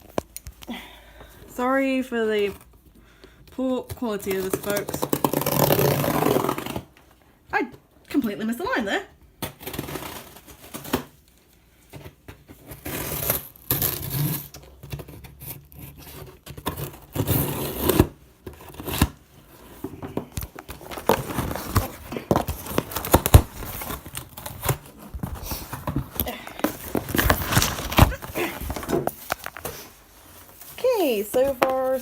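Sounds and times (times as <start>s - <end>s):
cardboard and tape tearing: 4.2s - 7.0s, 9.4s - 11.2s, 12.0s - 32.0s
cardboard crinkling: 9.5s - 32.0s.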